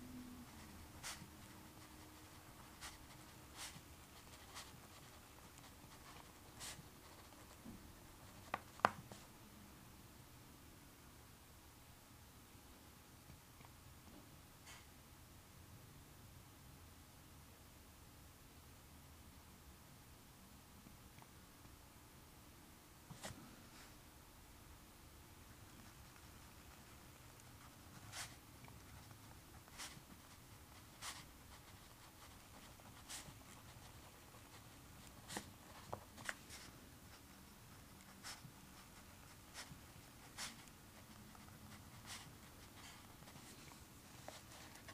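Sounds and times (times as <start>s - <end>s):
faint room hiss: 0.0s - 44.9s
pen scratching on paper: 0.6s - 7.6s, 8.2s - 9.2s, 25.7s - 44.9s.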